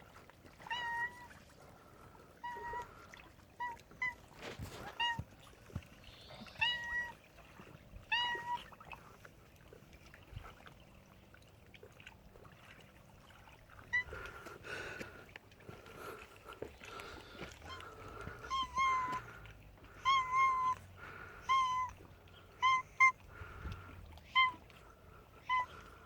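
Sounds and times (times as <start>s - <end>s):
cat high-pitched calls: 0.6s - 1.3s, 6.3s - 7.2s, 8.1s - 8.7s, 17.6s - 19.3s, 20.0s - 20.8s, 21.4s - 23.2s, 24.2s - 24.6s, 25.4s - 25.8s.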